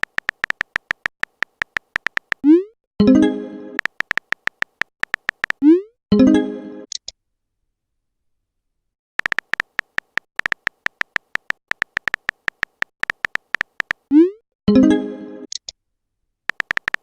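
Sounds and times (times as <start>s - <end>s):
short electronic typing beeps: 0.0s - 2.6s, 3.8s - 5.8s, 9.2s - 14.2s, 16.5s - 17.0s.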